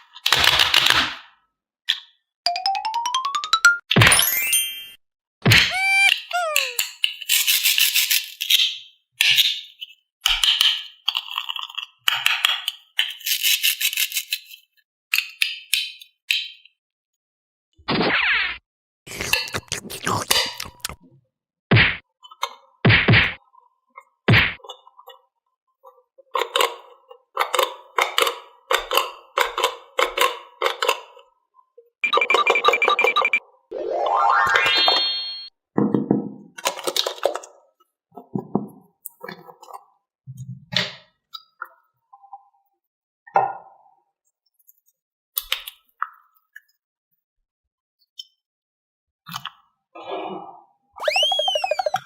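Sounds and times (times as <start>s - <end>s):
toy plops: 51.0s - 52.0s.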